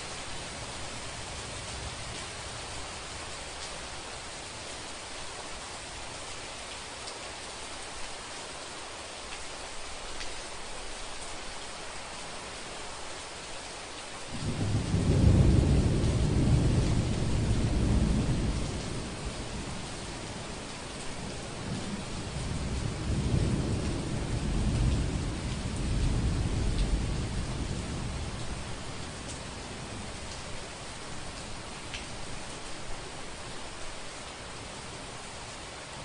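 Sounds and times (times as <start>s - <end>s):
heavy rain: 0.0s - 36.0s
thunder rumbling: 14.4s - 19.8s.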